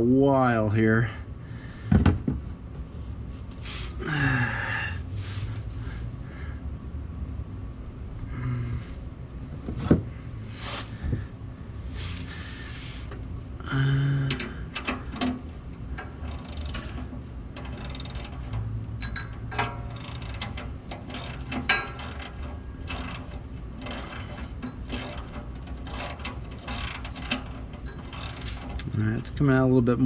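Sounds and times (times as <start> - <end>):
hand ratchet clicking: 14.3 - 28.9.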